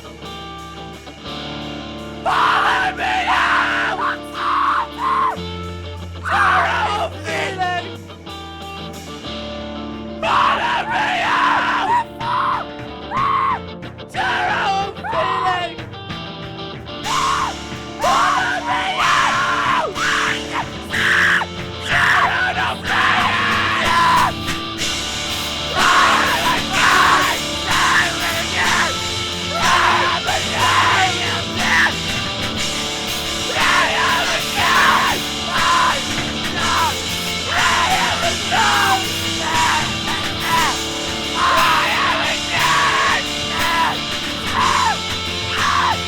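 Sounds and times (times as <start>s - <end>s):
loud rock music: 0.0s - 46.0s
person screaming vocals: 2.3s - 5.4s, 17.1s - 24.4s, 25.7s - 32.1s, 33.5s - 46.0s.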